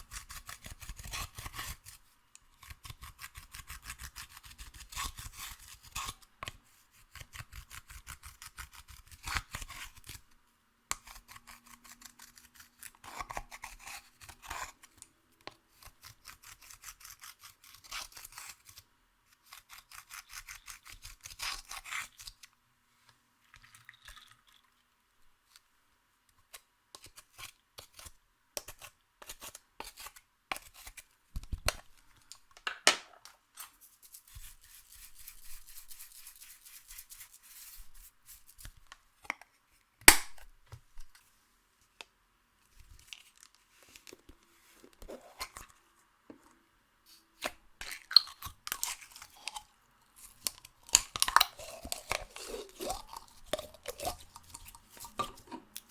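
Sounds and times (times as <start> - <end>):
loud sharp slime pop: 40.1 - 40.4.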